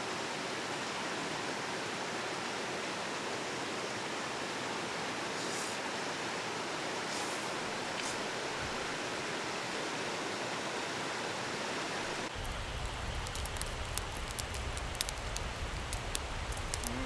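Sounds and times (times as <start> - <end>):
faint high hisses: 5.2 - 5.9, 7.0 - 9.0, 12.3 - 17.0.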